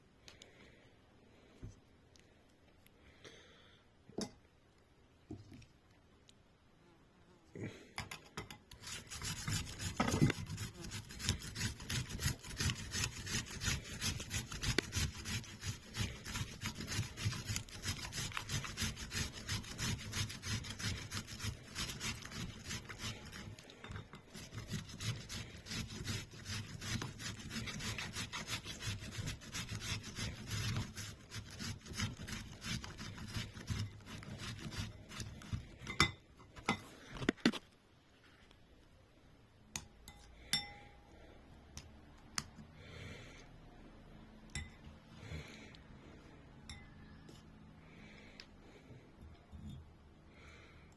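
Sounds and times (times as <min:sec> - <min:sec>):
hand rasping scraping strokes: 0:08.7 - 0:36.0.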